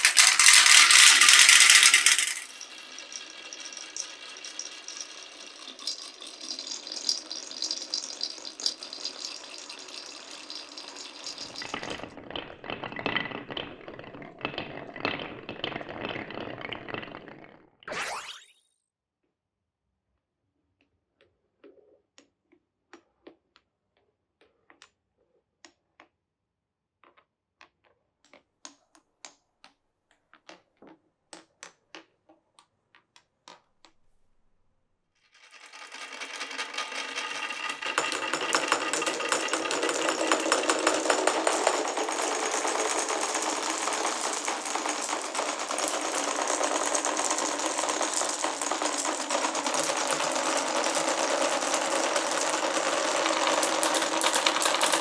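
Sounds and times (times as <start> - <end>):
marbles clicking on wooden track: 0.0 - 17.2, 35.4 - 55.0
marbles clattering together: 0.0 - 17.3, 17.9 - 18.4, 35.4 - 55.0.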